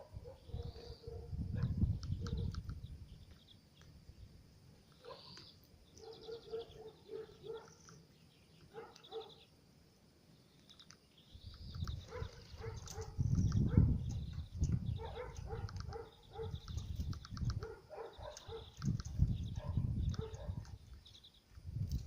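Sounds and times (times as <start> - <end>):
tits chirping: 0.0 - 22.0.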